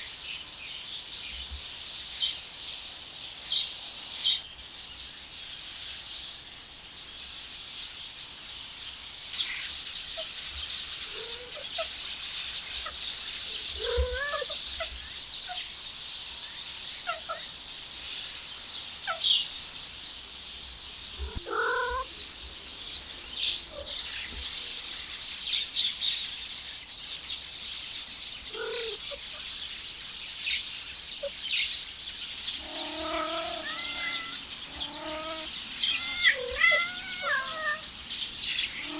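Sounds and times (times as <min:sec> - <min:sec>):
steady high hiss: 0:00.0 - 0:38.9
cats meowing: 0:11.1 - 0:11.9, 0:12.8 - 0:14.9, 0:21.2 - 0:22.2, 0:23.4 - 0:24.1, 0:28.5 - 0:29.3, 0:32.6 - 0:37.9.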